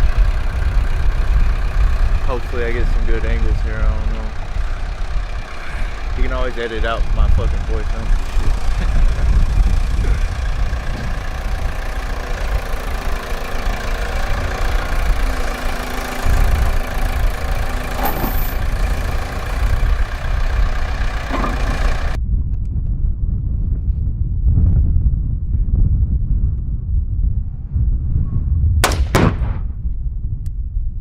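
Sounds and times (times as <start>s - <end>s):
vehicle engine idling: 0.0s - 22.2s
wind buffeting microphone: 0.0s - 31.0s.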